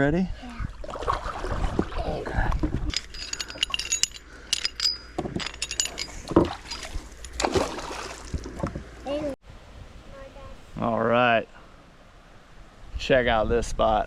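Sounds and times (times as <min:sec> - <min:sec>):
metal fishing gear clinking: 0:02.9 - 0:07.4.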